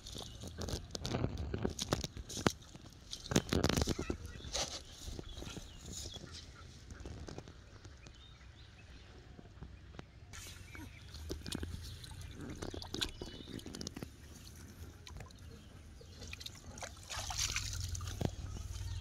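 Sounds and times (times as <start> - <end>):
water sloshing and splashing: 10.4 - 19.0.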